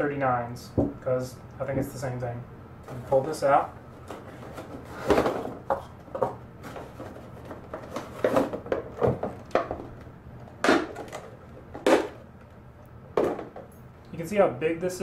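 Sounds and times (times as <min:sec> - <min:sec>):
parts and packaging clacking: 0:04.0 - 0:12.5.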